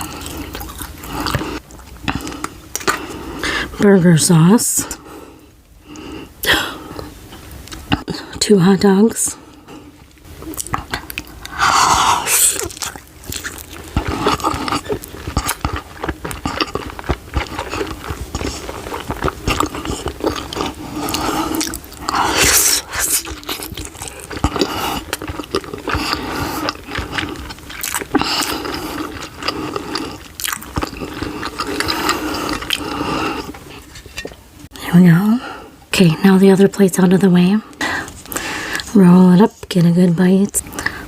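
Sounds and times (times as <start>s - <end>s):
chewing and biting food: 0.0s - 3.5s, 10.0s - 34.4s
wet mouth clicks and smacks: 10.5s - 11.6s.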